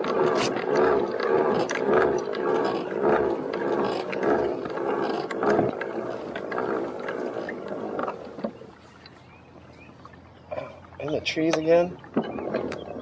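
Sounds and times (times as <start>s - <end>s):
geared pedal drive whirring: 0.0s - 9.2s.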